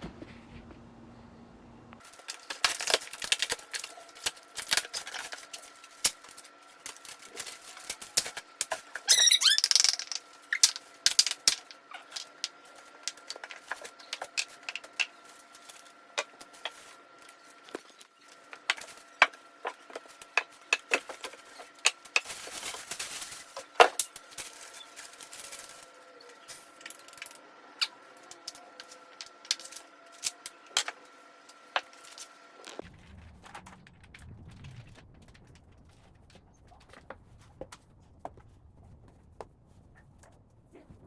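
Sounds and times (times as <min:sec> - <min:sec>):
faint steady hum: 0:00.0 - 0:41.0
rustling: 0:12.0 - 0:25.9.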